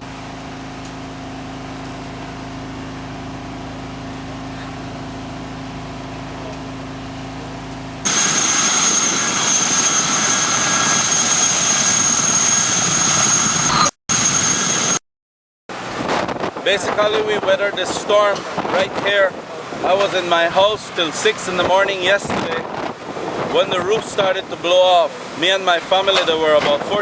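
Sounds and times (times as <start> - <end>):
machine noise with high whine: 0.0 - 15.0
steady engine hum: 0.1 - 15.0.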